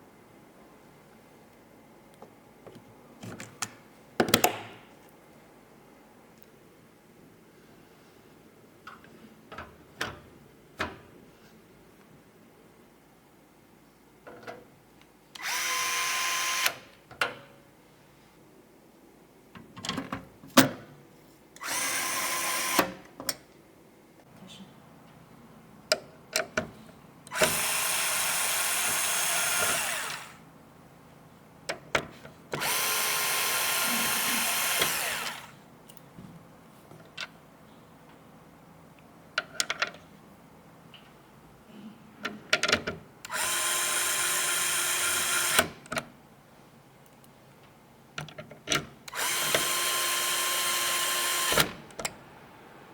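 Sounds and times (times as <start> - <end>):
electric screwdriver motor whirring: 15.4 - 16.8, 21.6 - 22.9, 27.3 - 30.4, 32.6 - 35.6, 43.3 - 45.7, 49.1 - 51.8.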